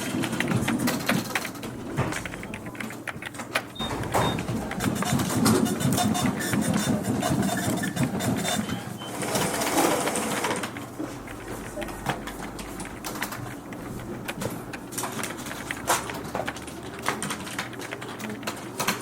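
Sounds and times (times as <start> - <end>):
office machine mechanical chatter: 0.0 - 19.0
scattered clicks: 0.0 - 19.0.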